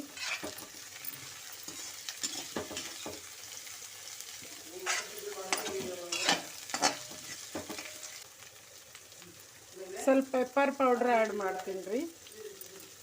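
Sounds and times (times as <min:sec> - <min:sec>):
spatula scraping a pan: 0:00.0 - 0:08.2
vegetables sizzling in oil: 0:00.0 - 0:13.0.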